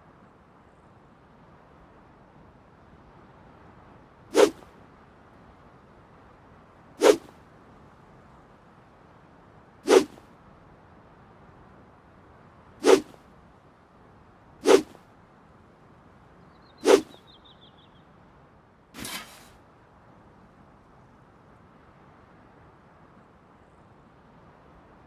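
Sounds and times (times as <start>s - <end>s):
sword swishing through air: 4.3s - 4.7s, 7.0s - 7.3s, 9.9s - 10.2s, 12.8s - 13.2s, 14.6s - 15.0s, 16.8s - 17.2s, 19.0s - 19.6s.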